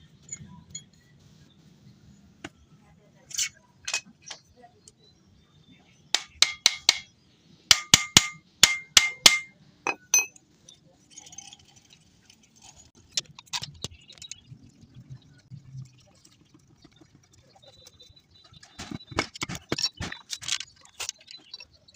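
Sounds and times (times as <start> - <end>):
hammer tapping metal: 6.2 - 7.1, 7.7 - 10.4.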